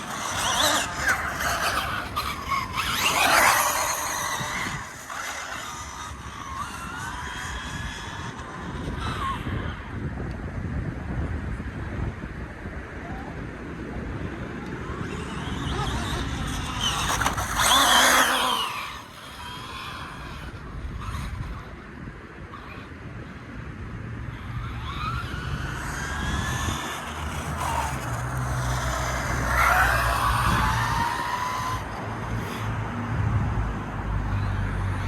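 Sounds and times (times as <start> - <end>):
electric motor whine: 0.0 - 9.9, 14.6 - 21.8, 24.2 - 32.8
wheels rolling: 0.0 - 9.9, 14.6 - 23.4, 24.2 - 34.5
wind noise: 0.0 - 35.0.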